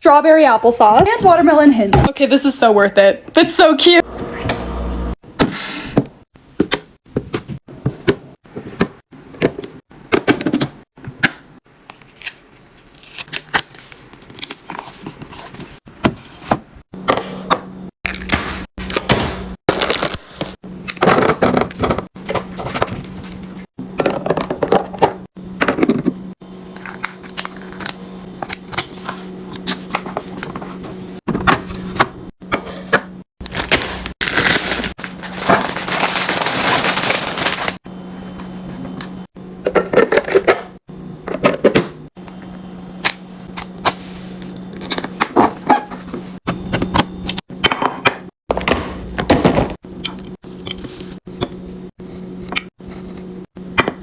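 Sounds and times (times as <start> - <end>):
fridge hum: 0.0 - 54.0
packets rustling: 33.4 - 37.8.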